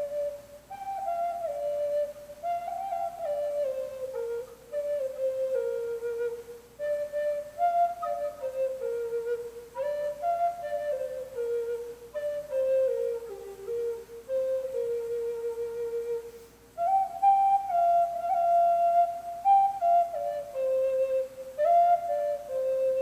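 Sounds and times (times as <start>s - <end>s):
flute solo melody: 0.0s - 23.0s.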